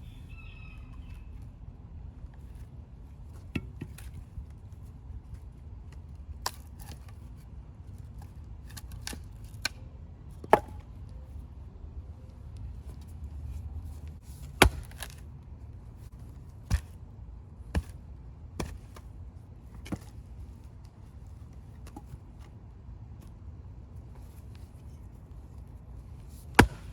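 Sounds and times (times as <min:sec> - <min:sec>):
axe striking wood: 0:14.6 - 0:15.2, 0:26.5 - 0:26.9.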